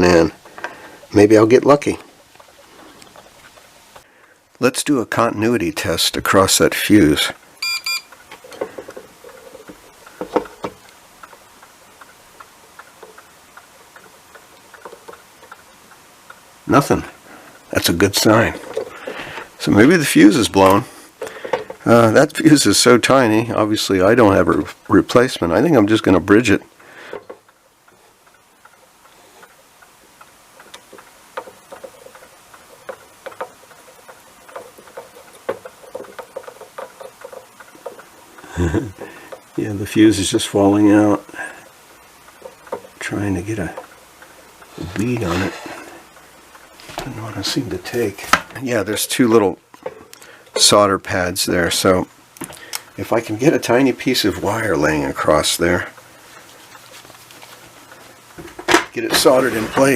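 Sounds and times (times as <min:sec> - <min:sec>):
faint even ticking: 0:07.4 - 0:58.4
meter probes clicking: 0:07.5 - 0:16.9, 0:24.0 - 0:59.4
small tools tapping circuit board: 0:27.1 - 0:39.6.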